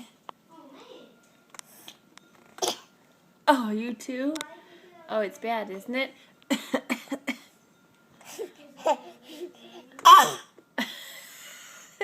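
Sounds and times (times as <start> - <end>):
playful coughs: 2.6 - 2.9, 10.0 - 10.6.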